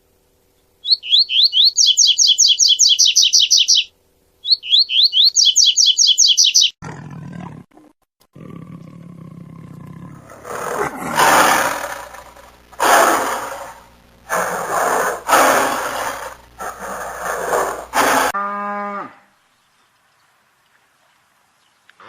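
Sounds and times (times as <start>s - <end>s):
big cat roaring: 6.8s - 19.1s.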